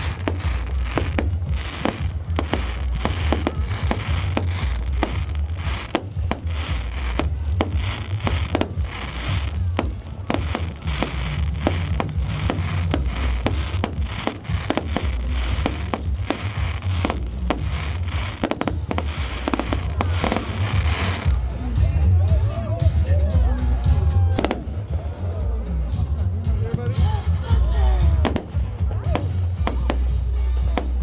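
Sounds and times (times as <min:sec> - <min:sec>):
steady low rumble: 0:00.0 - 0:23.8
fireworks bangs and crackles: 0:00.0 - 0:31.0.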